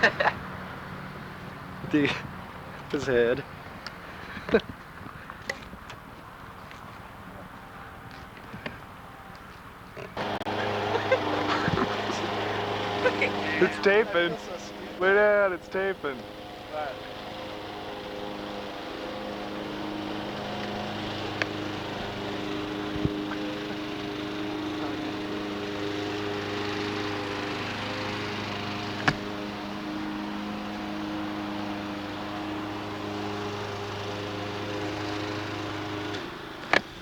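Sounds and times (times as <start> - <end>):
motor hum: 0.0 - 37.0.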